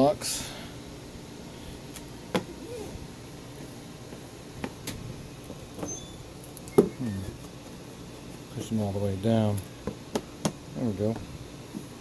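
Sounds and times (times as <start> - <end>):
short squeaks: 5.8 - 7.4.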